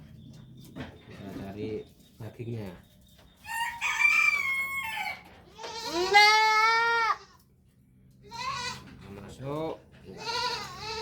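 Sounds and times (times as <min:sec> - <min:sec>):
goat kid bleating: 0:05.5 - 0:07.5, 0:08.2 - 0:08.9, 0:10.1 - 0:11.0.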